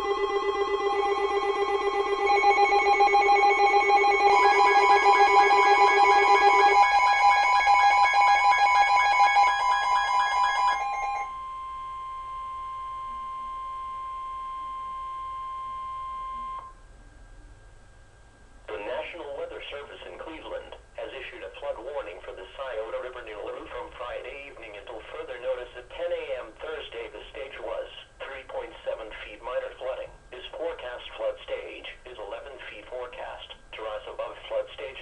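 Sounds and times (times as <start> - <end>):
pulsing electronic alert tones: 0.0 - 7.2
telephone bell ringing: 0.0 - 11.4
steady alarm tone: 0.0 - 17.4.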